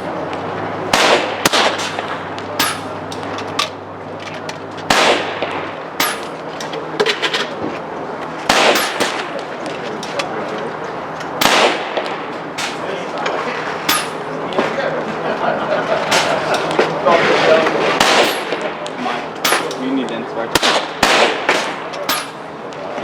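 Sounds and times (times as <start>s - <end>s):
air rifle shots cracking: 0.9s - 3.8s, 4.9s - 6.5s, 8.5s - 9.4s, 11.3s - 12.9s, 18.0s - 19.9s, 20.5s - 22.5s.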